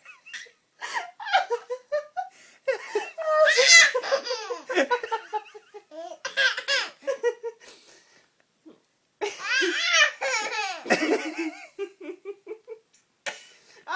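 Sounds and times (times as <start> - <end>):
baby laughing: 2.8 - 7.2, 9.2 - 11.5.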